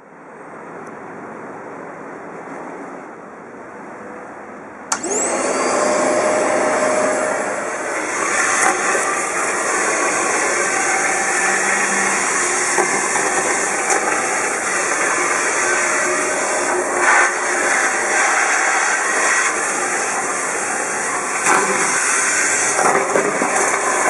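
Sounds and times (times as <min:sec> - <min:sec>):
vacuum switch click: 0:04.9 - 0:06.4
vacuum cleaner motor whine: 0:04.9 - 0:24.0.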